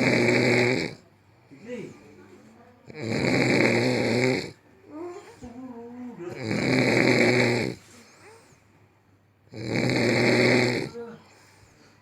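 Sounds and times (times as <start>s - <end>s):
woman snoring: 0.0s - 1.0s, 2.9s - 5.4s, 6.2s - 8.4s, 9.5s - 11.4s.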